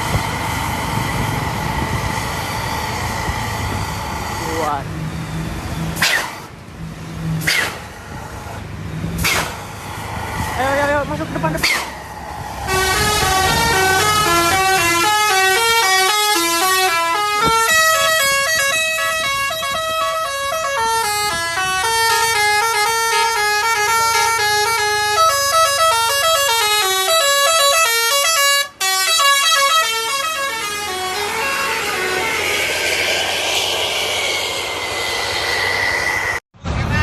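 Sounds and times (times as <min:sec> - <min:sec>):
musical bus horn melody: 0:12.7 - 0:32.6.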